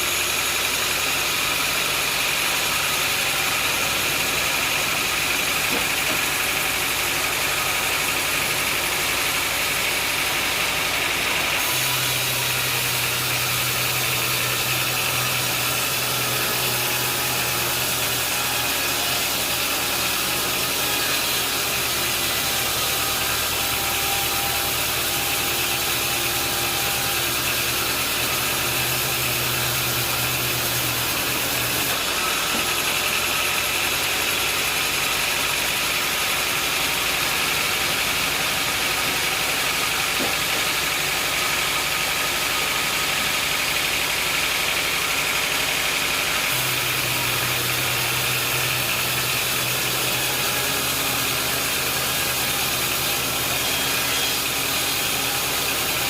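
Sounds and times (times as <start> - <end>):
engine running: 0.0 - 56.0.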